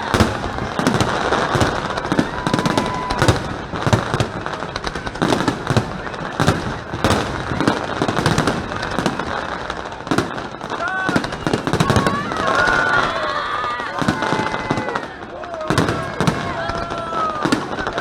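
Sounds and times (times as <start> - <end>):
faint firework whistle: 0.0 - 4.2
fireworks booming and crackling: 0.0 - 18.0.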